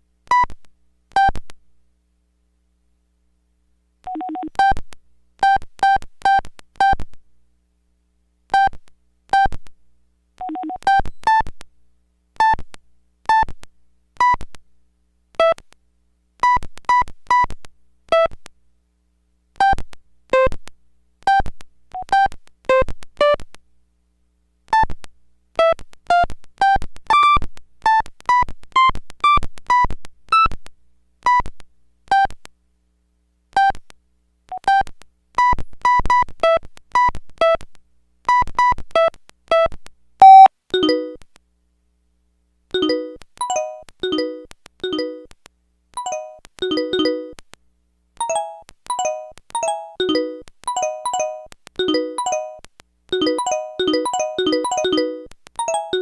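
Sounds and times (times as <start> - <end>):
cell phone ringtone melody: 42.8 - 45.3, 46.0 - 47.4, 48.2 - 52.6, 53.2 - 56.0.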